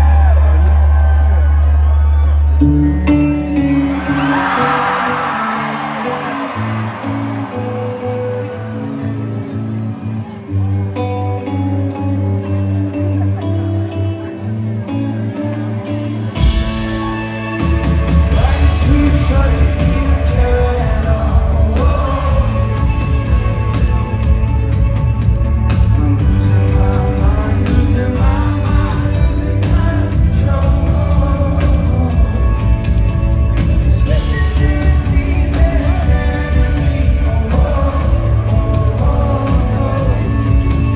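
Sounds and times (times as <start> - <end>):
rock band playing live: 2.6 - 40.9
lead vocalist singing: 3.5 - 8.5, 18.2 - 24.9, 25.6 - 40.9.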